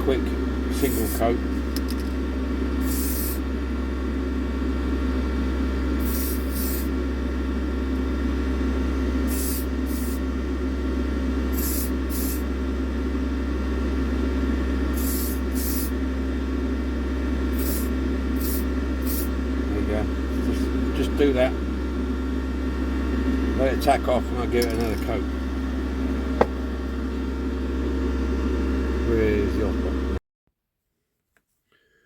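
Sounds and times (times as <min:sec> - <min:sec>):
steady hum: 0:00.0 - 0:30.2
spray paint hisses: 0:02.8 - 0:03.4, 0:06.0 - 0:06.9, 0:09.3 - 0:10.2, 0:11.6 - 0:12.4, 0:15.0 - 0:15.9, 0:17.6 - 0:19.3.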